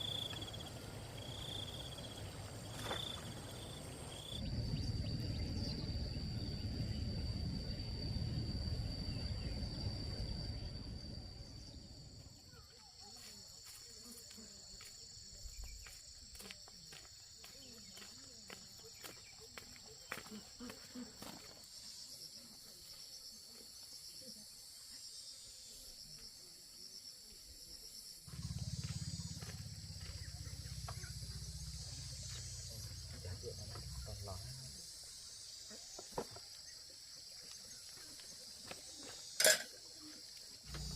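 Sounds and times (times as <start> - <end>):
insects chirring: 0.0 - 40.9
low rumbling noise: 4.4 - 12.1.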